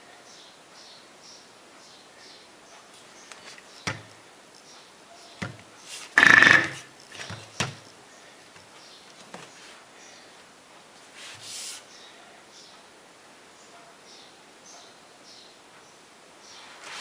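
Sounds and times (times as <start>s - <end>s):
objects knocking when set down: 6.2s - 7.8s
loud scraping rustle: 16.6s - 17.0s.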